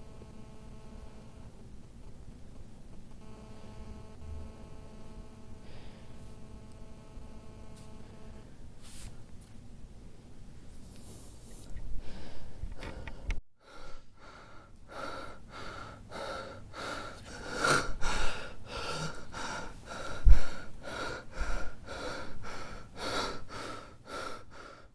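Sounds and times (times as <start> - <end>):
person panting heavily: 12.0 - 24.9.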